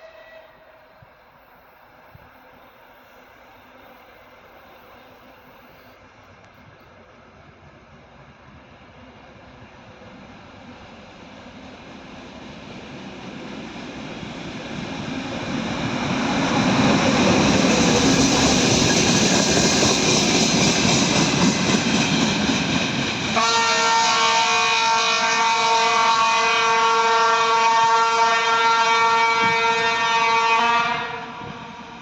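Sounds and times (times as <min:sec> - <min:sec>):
locomotive horn blast: 0:00.0 - 0:00.9, 0:23.4 - 0:31.6
diesel locomotive engine: 0:00.0 - 0:32.0.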